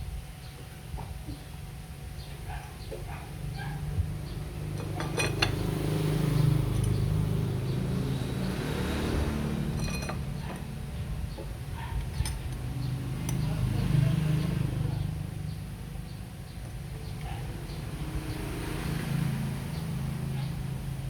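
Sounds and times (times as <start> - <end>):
light metallic clinks: 4.7 - 5.8, 6.4 - 7.8, 9.7 - 10.7, 12.0 - 13.7.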